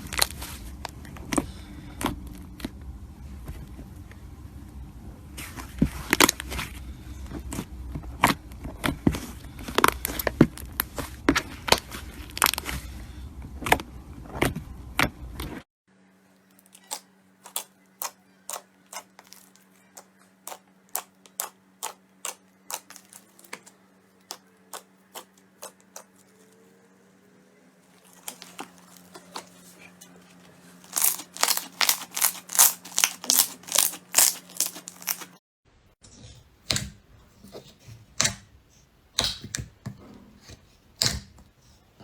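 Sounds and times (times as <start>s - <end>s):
faint steady hum: 0.0s - 42.0s
slime crackling and popping: 27.9s - 29.5s, 30.8s - 35.4s.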